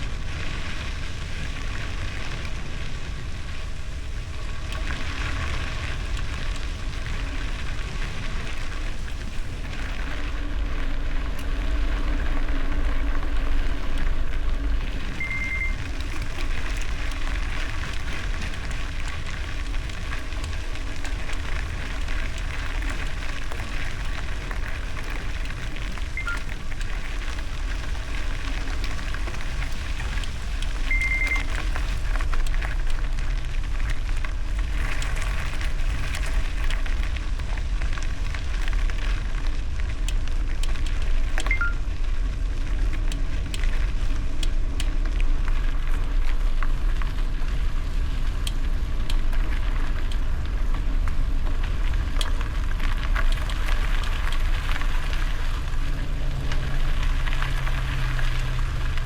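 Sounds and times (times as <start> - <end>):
bicycle tyres on gravel: 0.0 - 59.0
wind rumble on microphone: 0.0 - 59.0
short high beeps: 15.2 - 15.8, 26.2 - 26.4, 30.9 - 31.5, 41.4 - 41.8.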